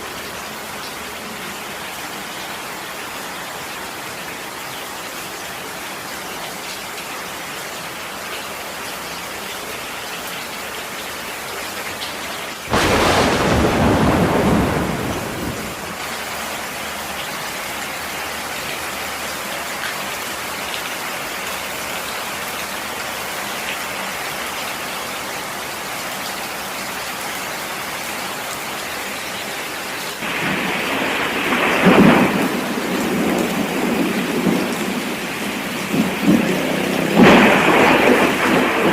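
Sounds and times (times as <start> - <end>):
rain hissing: 12.6 - 23.1, 27.4 - 38.9.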